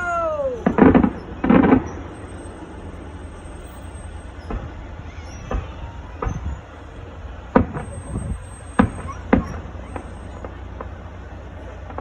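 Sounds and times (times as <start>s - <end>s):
fireworks bangs: 0.0s - 12.0s
steady low rumble: 0.0s - 12.0s.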